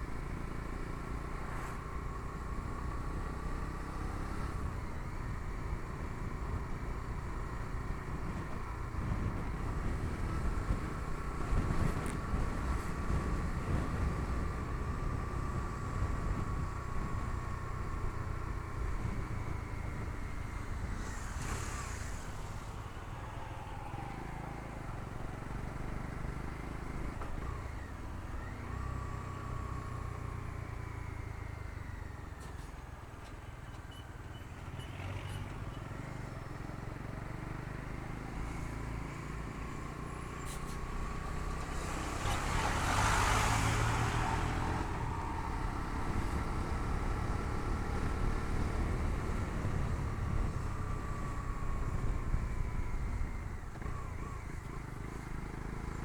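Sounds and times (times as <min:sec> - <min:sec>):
low wind rumble: 0:04.7 - 0:27.6.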